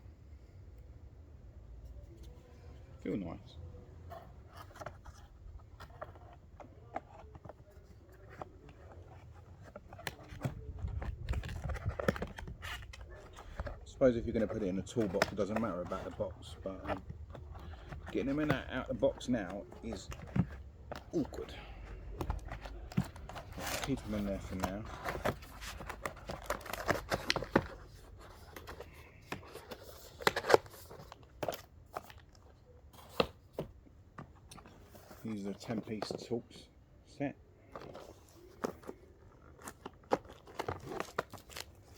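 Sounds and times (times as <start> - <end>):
packaging rustling: 4.5 - 33.7, 37.6 - 41.9.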